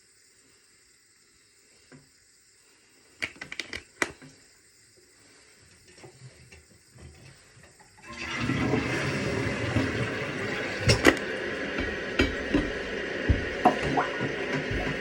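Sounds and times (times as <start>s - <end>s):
sharp clicks and knocks: 3.2s - 4.3s, 10.9s - 15.0s
toilet flushing: 7.8s - 15.0s.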